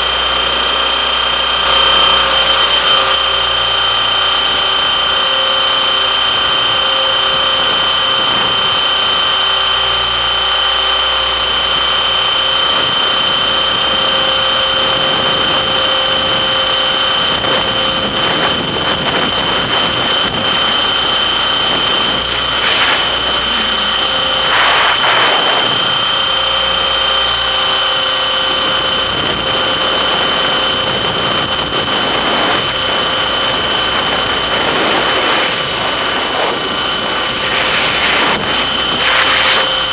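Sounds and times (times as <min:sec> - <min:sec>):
helicopter motor whine: 0:00.0 - 0:39.9.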